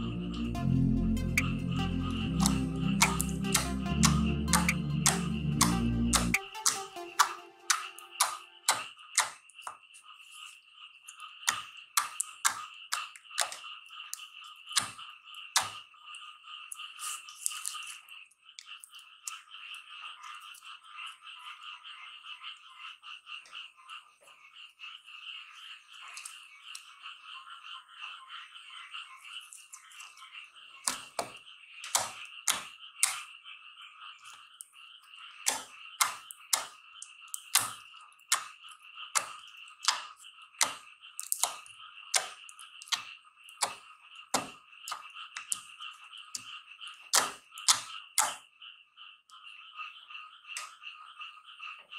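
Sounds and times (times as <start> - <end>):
high background chorus: 0.0 - 8.8.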